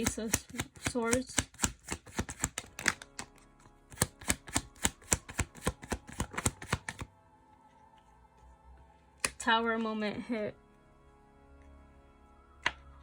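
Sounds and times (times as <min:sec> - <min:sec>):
cards being shuffled: 0:00.0 - 0:07.1
soft background music: 0:00.0 - 0:13.0.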